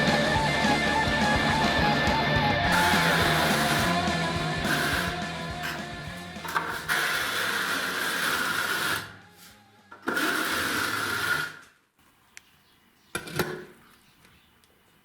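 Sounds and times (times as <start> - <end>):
power tool motor running: 2.7 - 9.1, 10.0 - 11.6.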